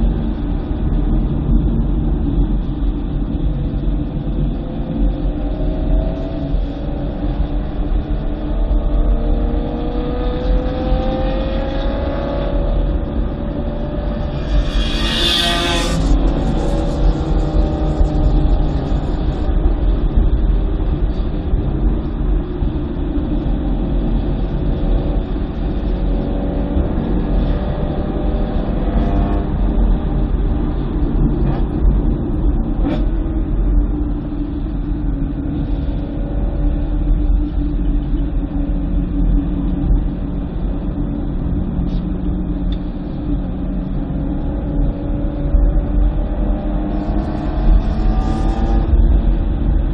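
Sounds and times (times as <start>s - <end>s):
car engine accelerating: 2.3s - 33.4s, 41.2s - 49.9s.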